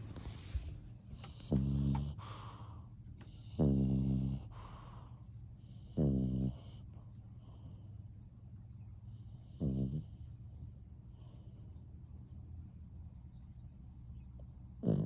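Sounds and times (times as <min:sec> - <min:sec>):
loud low snoring: 0:01.3 - 0:02.3, 0:03.4 - 0:04.8, 0:05.7 - 0:06.8, 0:09.4 - 0:10.3, 0:14.8 - 0:15.0.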